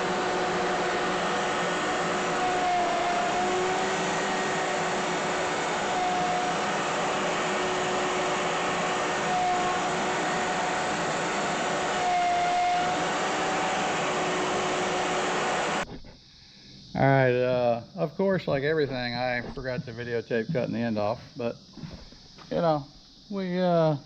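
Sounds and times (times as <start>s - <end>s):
router motor cutting wood: 0.0s - 15.9s.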